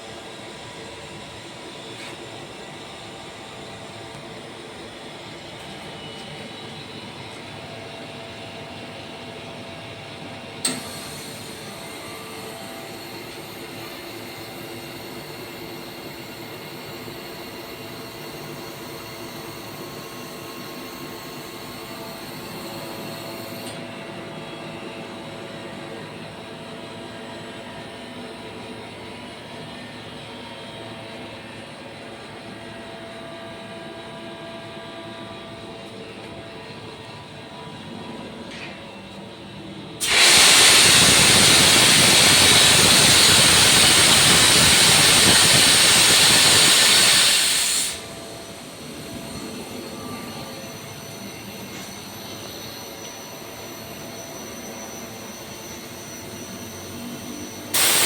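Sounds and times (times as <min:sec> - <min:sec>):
high air hiss: 0:40.0 - 0:48.1, 0:57.8 - 0:58.0
air compressor humming: 0:40.0 - 0:58.0.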